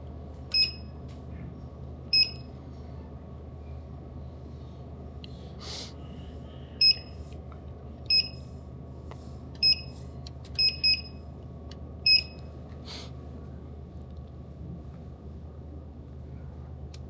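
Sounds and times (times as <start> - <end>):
steady low hum: 0.0 - 17.0
keypad beeping: 9.6 - 9.9, 10.6 - 11.2, 12.1 - 12.4.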